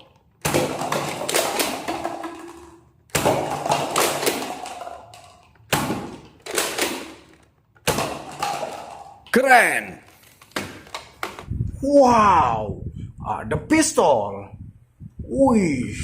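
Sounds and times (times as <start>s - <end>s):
toy gun bangs: 0.4s - 9.2s.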